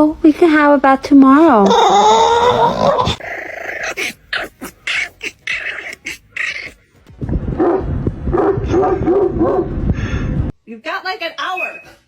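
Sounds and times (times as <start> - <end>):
dog growling: 2.2 - 6.8.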